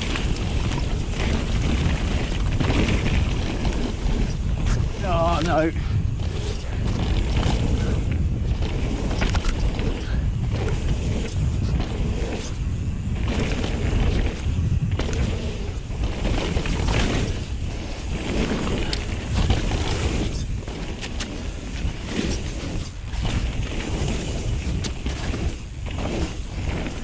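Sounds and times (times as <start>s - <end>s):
bike rolling over dirt trail: 0.0s - 27.0s
wind buffeting microphone: 0.0s - 27.0s.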